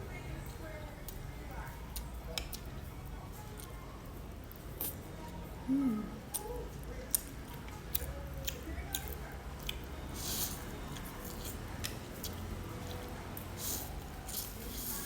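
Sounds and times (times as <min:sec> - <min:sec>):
chewing noodles with wet clicks: 0:01.0 - 0:05.4, 0:06.3 - 0:15.0.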